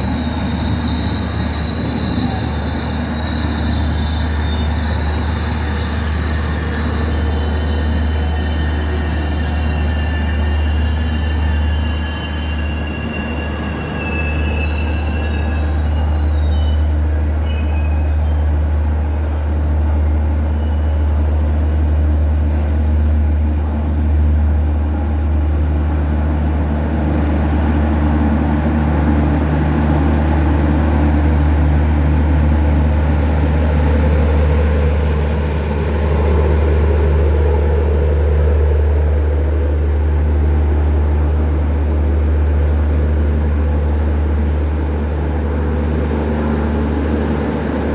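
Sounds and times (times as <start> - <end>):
high-pitched wheel squeal: 0.0 - 18.5
train rolling on rails: 0.0 - 47.9.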